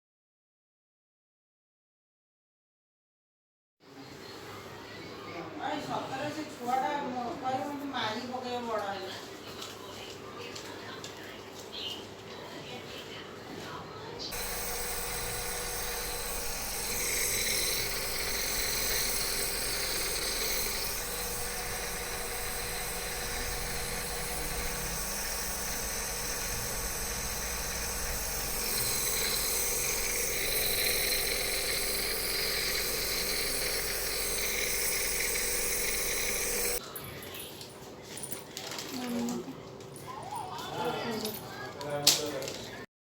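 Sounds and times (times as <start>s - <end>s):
compressor motor hum: 14.3s - 36.8s.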